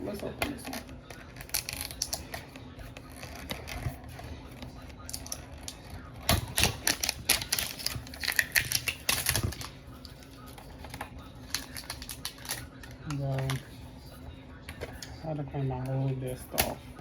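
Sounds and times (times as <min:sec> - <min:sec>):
plastic and cardboard crackling: 0:00.2 - 0:13.8.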